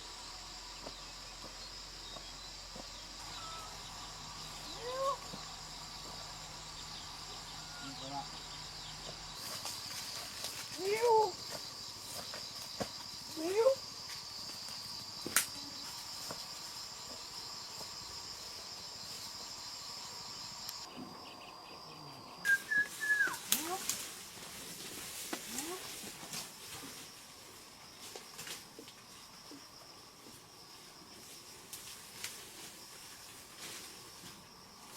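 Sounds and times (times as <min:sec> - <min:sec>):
insect chorus buzzing: 0:00.0 - 0:34.9.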